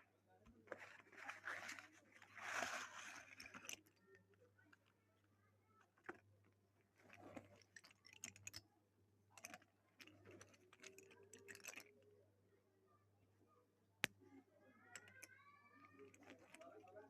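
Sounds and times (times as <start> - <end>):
scratchy rustles: 0.7 - 3.9.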